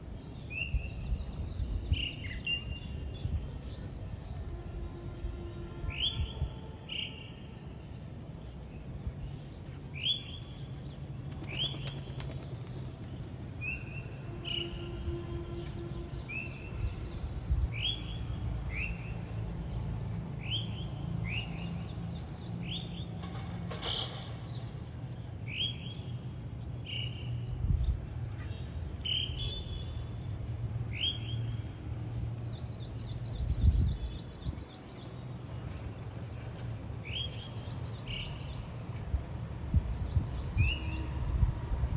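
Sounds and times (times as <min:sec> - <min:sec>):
small bird chirping: 0:11.3 - 0:13.9.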